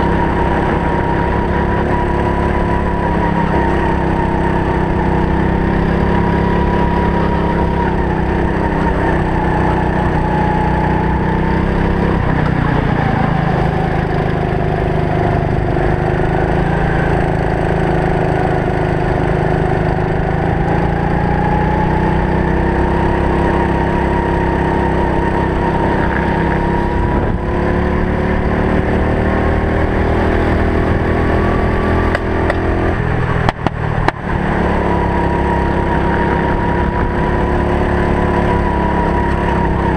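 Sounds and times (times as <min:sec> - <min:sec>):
kart engine running: 0:00.0 - 0:39.9.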